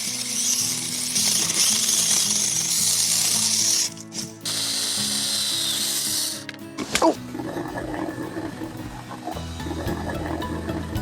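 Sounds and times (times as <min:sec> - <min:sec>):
electric chainsaw cutting wood: 0:00.0 - 0:07.2
background music: 0:00.0 - 0:11.0.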